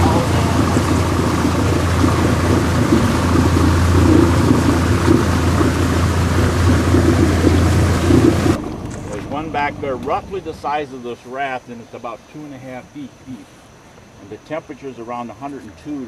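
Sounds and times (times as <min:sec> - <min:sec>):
rushing noise: 0:00.0 - 0:11.3
outboard engine running: 0:00.0 - 0:11.4.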